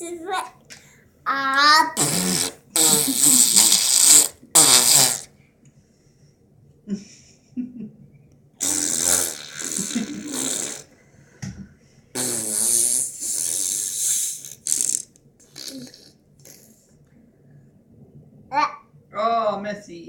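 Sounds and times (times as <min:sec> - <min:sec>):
child making fart noises: 0:01.6 - 0:05.3, 0:08.6 - 0:10.9, 0:12.2 - 0:16.8.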